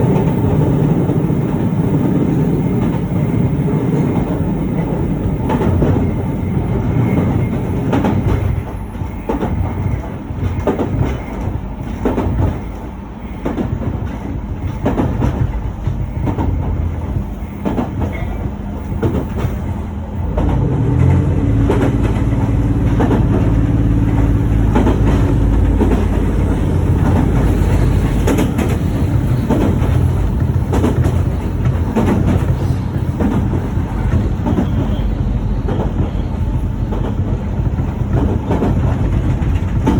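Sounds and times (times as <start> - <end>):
train wheels clicking on rails: 0.0 - 39.9.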